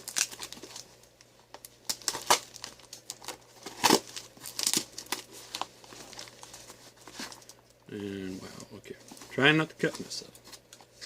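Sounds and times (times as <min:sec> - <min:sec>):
packing tape crinkling and tearing: 0:00.0 - 0:07.7.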